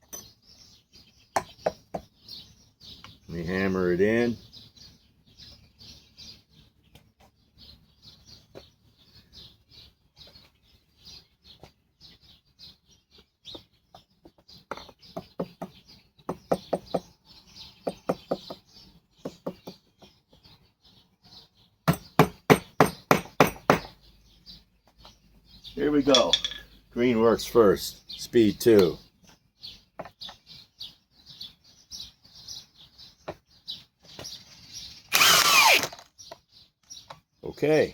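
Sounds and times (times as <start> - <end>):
faint birds chirping: 0.0 - 37.9
hammer knocking into wood: 14.7 - 17.1, 21.9 - 24.0.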